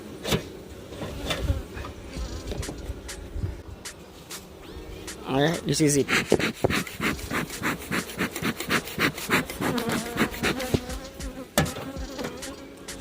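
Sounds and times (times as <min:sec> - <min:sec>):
honey bees buzzing: 0:00.0 - 0:13.0
quick rasping strokes: 0:05.8 - 0:11.4.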